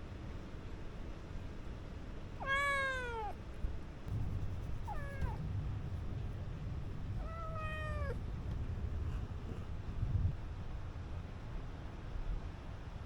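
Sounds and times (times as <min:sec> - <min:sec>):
kitten meowing: 0:02.4 - 0:03.4, 0:04.8 - 0:05.4, 0:07.2 - 0:08.2.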